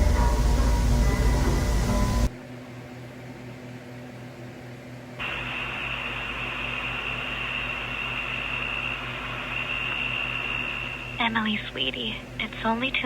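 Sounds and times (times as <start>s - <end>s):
tape hiss with high whine: 0.0s - 2.4s, 5.2s - 13.0s
low electrical hum: 0.0s - 13.0s.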